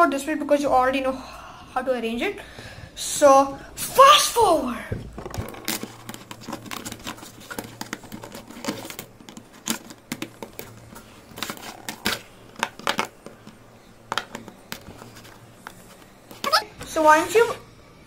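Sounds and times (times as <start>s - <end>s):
faint low hum: 0.0s - 18.0s
plastic boards clicking and tapping: 5.0s - 16.6s.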